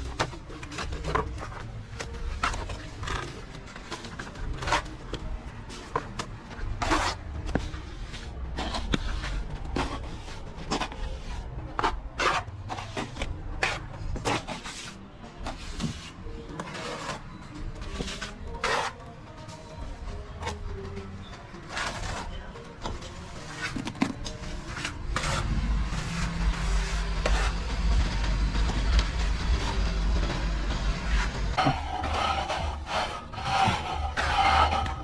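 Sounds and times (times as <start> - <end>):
trowel scraping mortar: 2.3 - 19.6, 21.6 - 27.7, 30.9 - 35.0
low rumble: 25.0 - 34.9.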